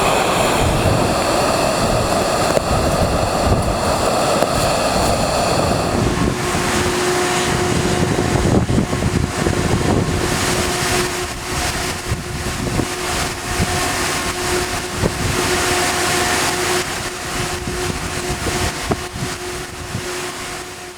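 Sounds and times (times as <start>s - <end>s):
steady hum: 0.0s - 20.9s
wind buffeting microphone: 0.0s - 20.9s.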